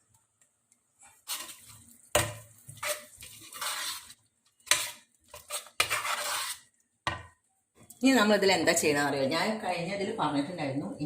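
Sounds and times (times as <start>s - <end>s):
spoon scraping mixer jar: 4.7s - 6.7s.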